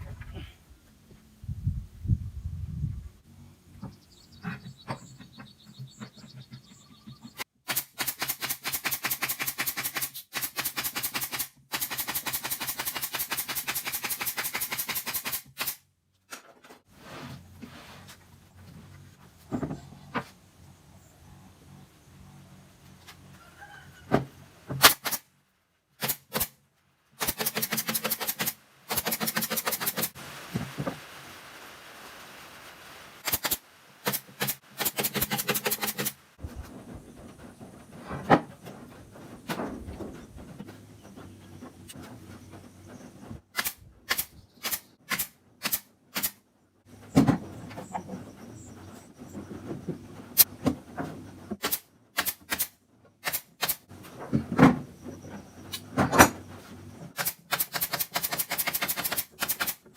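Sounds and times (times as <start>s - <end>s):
power tool rattling bursts: 27.2s - 30.2s, 33.2s - 36.2s.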